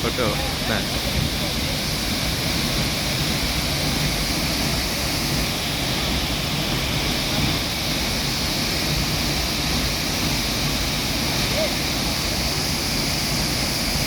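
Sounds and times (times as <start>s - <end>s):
waterfall roaring: 0.0s - 14.0s.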